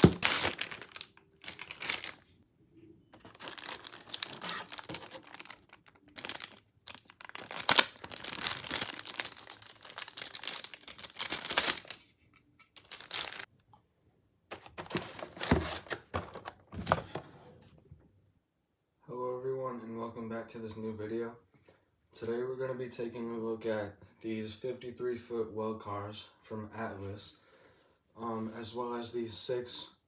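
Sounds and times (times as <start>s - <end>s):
plastic and paper crinkling: 0.0s - 2.3s, 3.2s - 12.0s, 12.6s - 13.5s, 14.5s - 17.2s.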